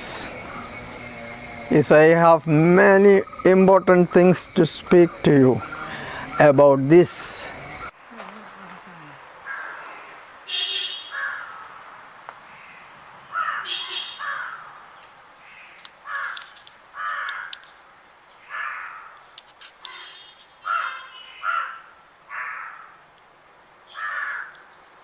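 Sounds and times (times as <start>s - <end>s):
crows cawing: 2.5s - 7.9s, 9.5s - 10.1s, 11.1s - 11.7s, 12.5s - 14.7s, 15.5s - 17.6s, 18.5s - 19.2s, 19.9s - 23.0s, 23.9s - 24.7s.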